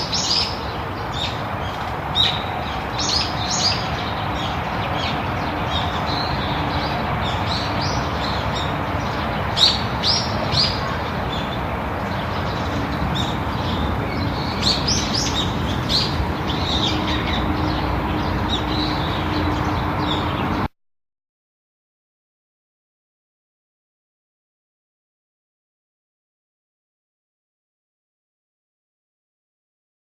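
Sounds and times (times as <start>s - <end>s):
songbirds chirping: 0.0s - 20.7s.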